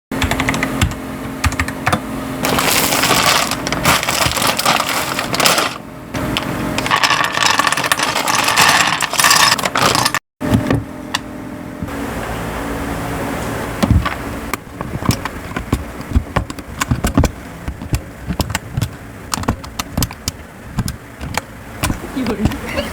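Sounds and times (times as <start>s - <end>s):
rustling: 2.4s - 5.8s
plastic keycaps clicking: 14.8s - 22.6s.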